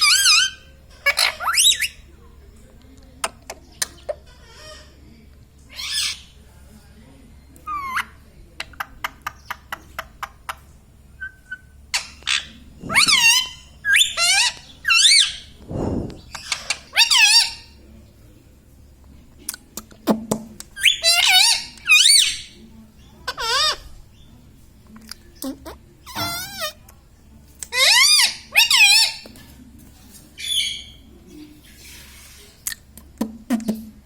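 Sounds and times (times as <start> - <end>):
parrot warbling calls: 0.0 - 2.0, 5.7 - 6.3, 11.2 - 15.5, 16.4 - 17.8, 20.8 - 22.5, 27.7 - 29.2.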